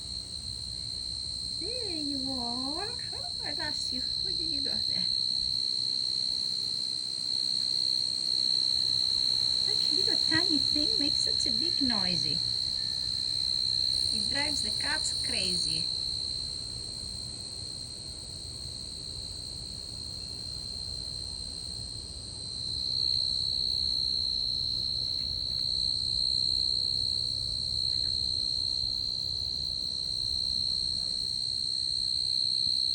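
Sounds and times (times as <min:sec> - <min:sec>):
tree cricket trilling: 0:00.0 - 0:32.9.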